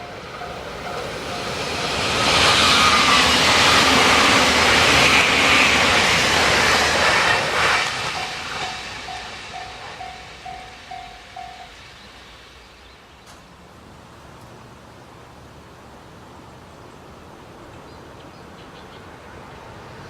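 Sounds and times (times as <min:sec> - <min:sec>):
level-crossing alarm bell dinging: 0:00.0 - 0:02.3, 0:08.1 - 0:11.9
train passing at speed: 0:00.0 - 0:20.0.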